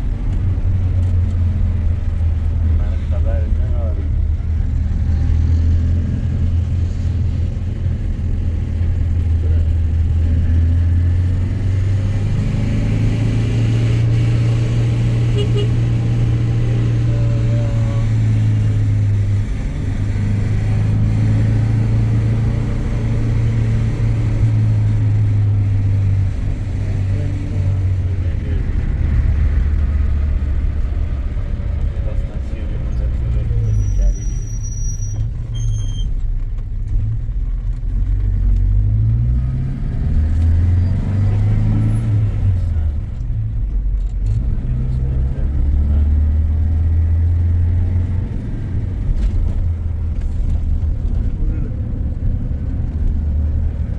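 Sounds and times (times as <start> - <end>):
vehicle engine droning: 0.0 - 53.9.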